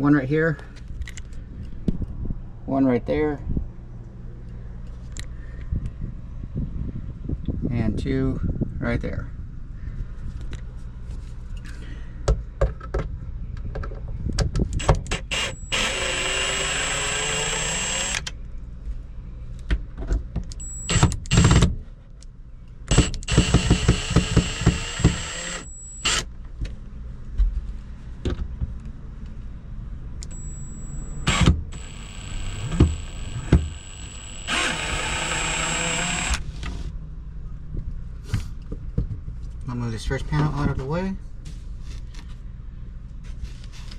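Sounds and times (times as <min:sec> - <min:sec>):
cordless drill motor whining: 0:14.8 - 0:18.3, 0:20.6 - 0:21.6, 0:22.9 - 0:26.2, 0:30.2 - 0:36.5
driver and screws clicking: 0:14.8 - 0:18.3, 0:20.5 - 0:21.7, 0:22.9 - 0:26.2, 0:30.2 - 0:36.4.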